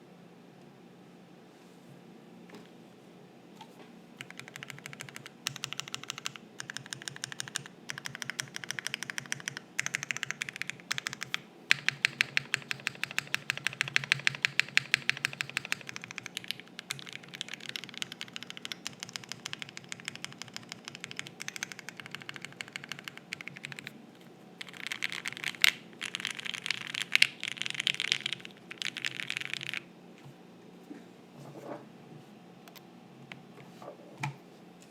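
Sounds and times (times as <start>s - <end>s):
typing on mechanical keyboard: 4.2s - 23.9s, 24.6s - 29.9s.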